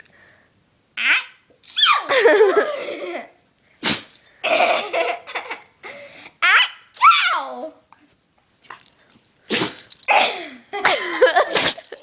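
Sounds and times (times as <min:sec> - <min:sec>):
puppy sneezing: 0:01.6 - 0:02.0, 0:03.8 - 0:04.2, 0:09.5 - 0:10.4, 0:11.4 - 0:12.0
person laughing loudly: 0:02.1 - 0:03.2, 0:10.8 - 0:11.9.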